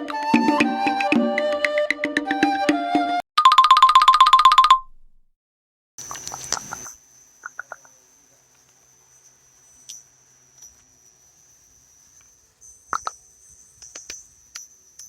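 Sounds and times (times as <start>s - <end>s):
trilling electronic ringtone: 3.4s - 5.0s.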